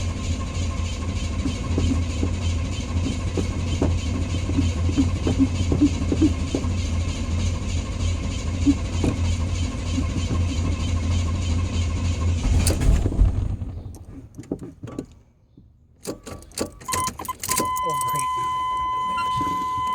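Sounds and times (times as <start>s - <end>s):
truck engine running: 0.0s - 14.6s
engine clunk: 0.0s - 19.9s.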